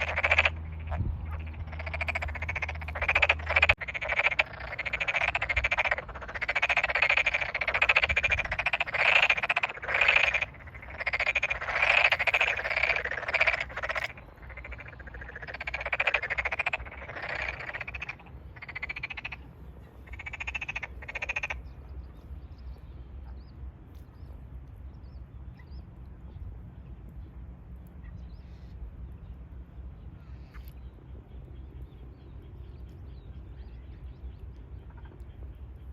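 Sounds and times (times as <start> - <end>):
frogs croaking in chorus: 0.0 - 22.0, 30.2 - 35.9.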